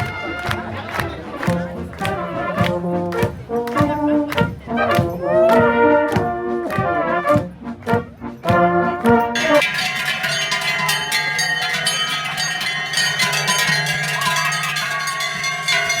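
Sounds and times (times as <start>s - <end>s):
brass band playing: 0.0s - 16.0s
drum beat: 0.0s - 16.0s
bells ringing: 9.2s - 16.0s.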